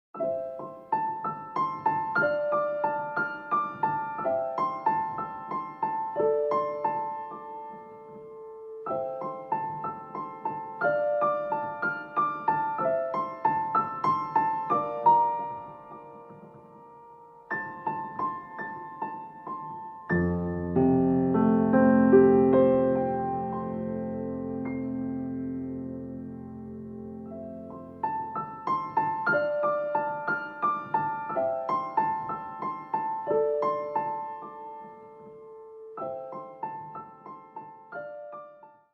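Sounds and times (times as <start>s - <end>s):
gentle piano melody: 0.2s - 38.9s.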